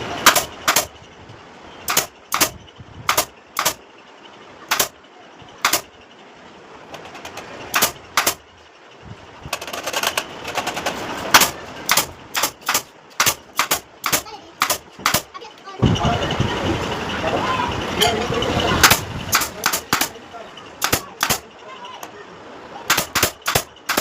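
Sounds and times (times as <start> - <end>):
strikes on wood: 0.2 - 0.9, 1.9 - 3.8, 4.7 - 4.9, 5.6 - 5.9, 7.0 - 8.4, 9.5 - 15.3, 22.9 - 24.0.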